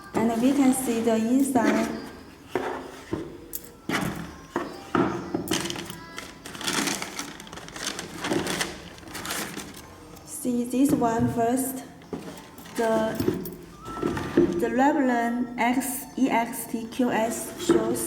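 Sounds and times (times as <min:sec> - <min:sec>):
cardboard box rustling: 0:06.2 - 0:09.9.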